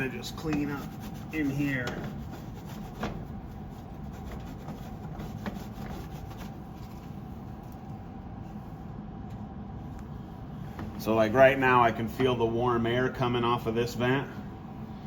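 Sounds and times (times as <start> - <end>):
cloth rag rubbing and wiping: 0.1 - 6.8.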